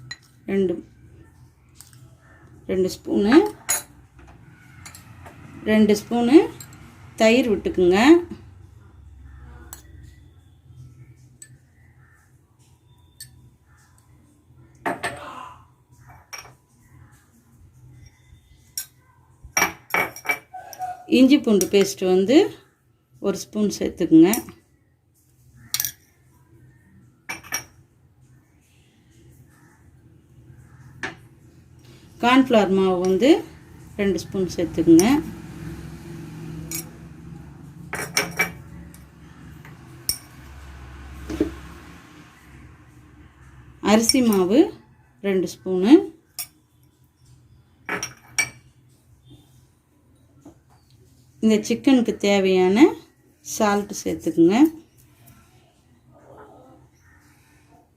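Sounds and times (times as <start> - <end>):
spoon clinking against a bowl: 0.0 - 0.4, 3.4 - 4.0, 6.5 - 7.0, 13.0 - 14.0, 18.0 - 21.0, 25.6 - 26.2, 36.6 - 37.1, 37.9 - 40.6, 46.3 - 48.7
spoon clinking against bowl: 3.4 - 4.0, 25.6 - 26.2, 37.9 - 39.0.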